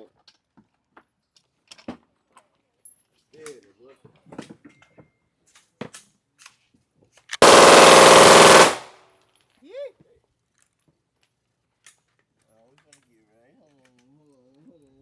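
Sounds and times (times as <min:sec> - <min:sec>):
rapid gunfire: 0:07.4 - 0:08.9.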